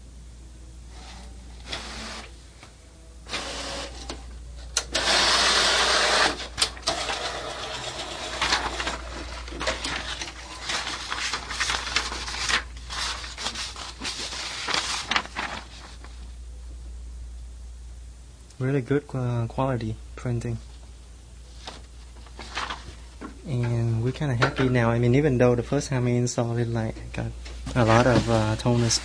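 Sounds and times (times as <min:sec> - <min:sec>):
inkjet printer whirring and clicking: 0:01.0 - 0:02.3, 0:03.3 - 0:04.2, 0:04.8 - 0:11.5.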